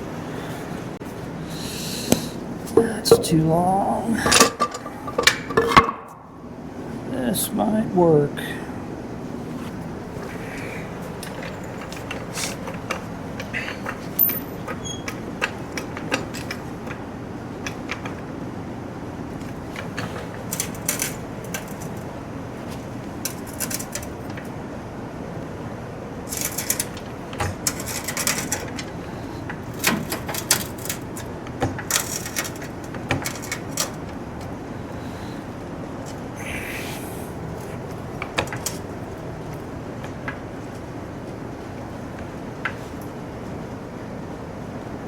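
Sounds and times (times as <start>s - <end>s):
steady background hum: 0.0s - 45.0s
metal parts and tools clinking: 14.2s - 14.7s.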